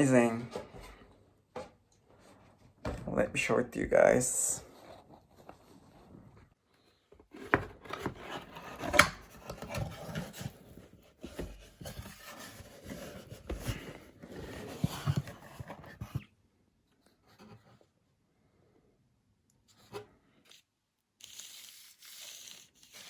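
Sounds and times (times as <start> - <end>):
packaging rubbing and scraping: 7.3 - 16.2, 21.2 - 23.0.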